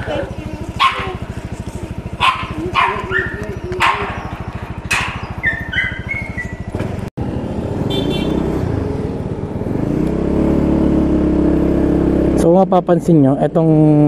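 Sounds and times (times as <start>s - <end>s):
motorcycle engine idling: 0.0s - 9.8s
motorcycle pulling away: 0.0s - 14.0s.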